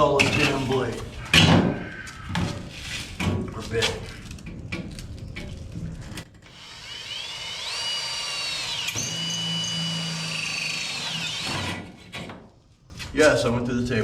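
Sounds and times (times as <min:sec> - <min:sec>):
electric drill whining: 0:06.4 - 0:11.9.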